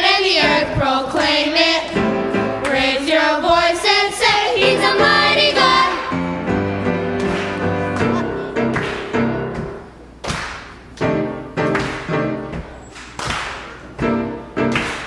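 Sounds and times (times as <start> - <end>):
choir singing with vibrato: 0.0 - 9.9
instrumental accompaniment: 4.6 - 10.0.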